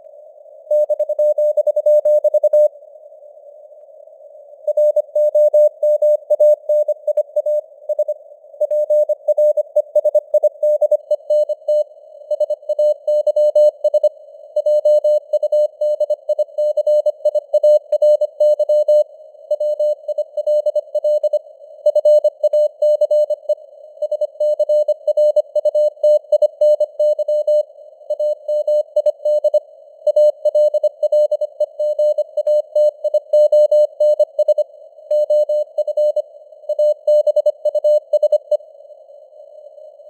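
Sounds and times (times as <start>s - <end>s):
faint radio hiss: 0.0s - 1.2s, 2.7s - 5.2s.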